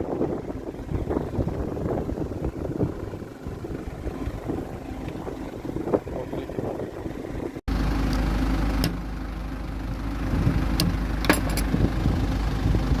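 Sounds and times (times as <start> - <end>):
machinery running with low rumble: 0.0 - 13.0
sharp metallic clicks and knocks: 10.8 - 11.8.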